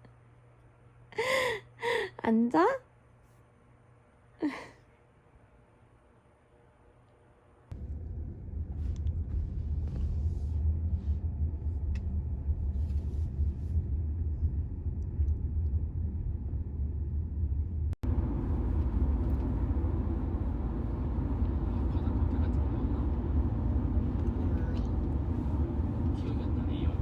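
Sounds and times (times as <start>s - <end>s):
car rumbling in motion: 7.7s - 27.0s.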